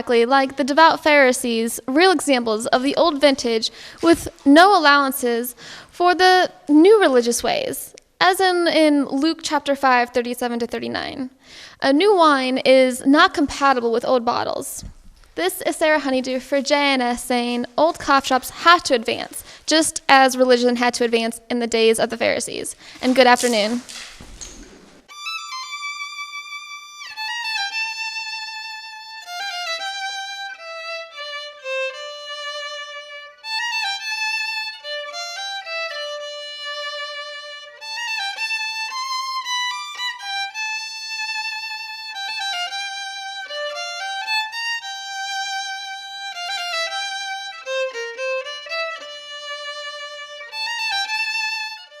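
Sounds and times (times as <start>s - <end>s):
solo violin melody: 25.0s - 52.0s.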